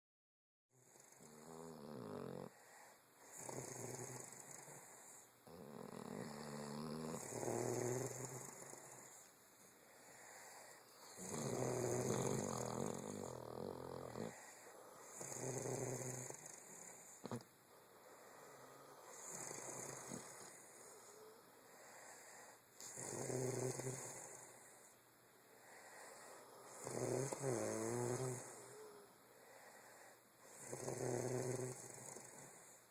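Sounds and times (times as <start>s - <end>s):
rattling snoring: 0.8s - 2.6s, 3.2s - 9.2s, 11.0s - 17.4s, 18.8s - 20.6s, 22.8s - 24.5s, 26.7s - 29.0s, 30.5s - 32.8s.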